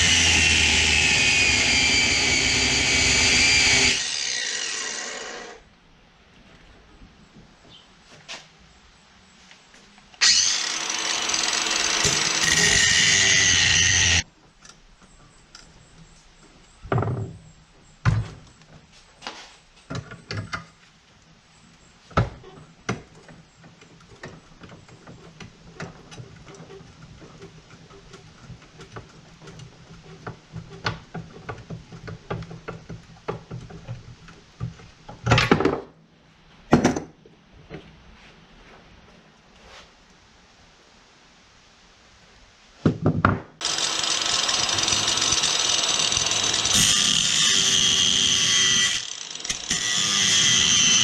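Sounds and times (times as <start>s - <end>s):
power tool running: 0.0s - 5.6s, 10.2s - 14.2s, 43.6s - 51.0s.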